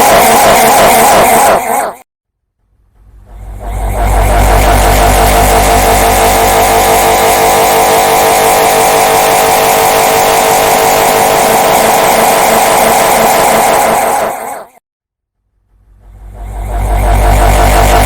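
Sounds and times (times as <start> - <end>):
layered bird laughing drone: 0.0 - 2.0.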